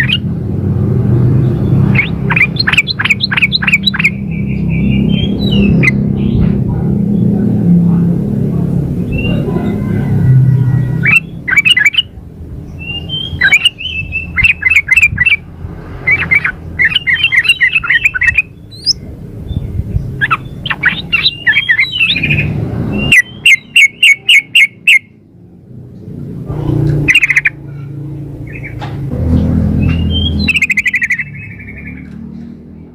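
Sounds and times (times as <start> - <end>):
bird calling chattering notes: 0.0 - 0.3, 1.5 - 6.4, 9.1 - 25.2, 26.7 - 28.8, 29.8 - 32.2.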